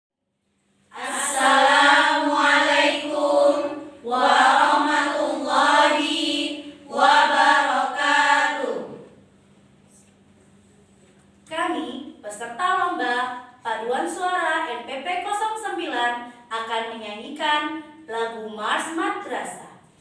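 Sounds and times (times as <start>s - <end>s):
children's choir singing: 0.9s - 9.1s.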